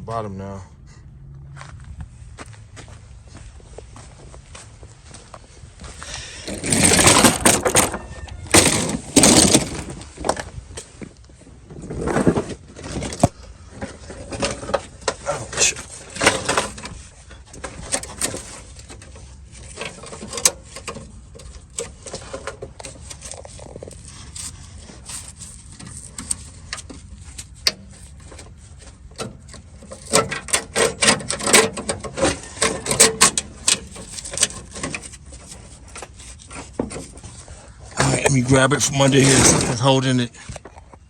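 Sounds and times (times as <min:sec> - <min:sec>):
metal brake line scraping on car underbody: 0:06.1 - 0:10.5, 0:11.8 - 0:38.3
rattling clicks: 0:06.4 - 0:10.5.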